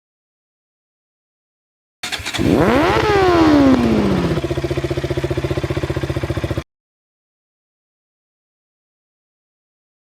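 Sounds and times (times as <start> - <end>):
motorcycle engine revving and idling: 2.0 - 6.6.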